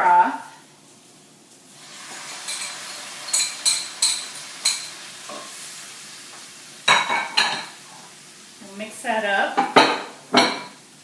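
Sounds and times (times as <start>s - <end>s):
food sizzling in a pan: 0.0s - 11.0s
utensil clinking against pan: 2.5s - 4.9s.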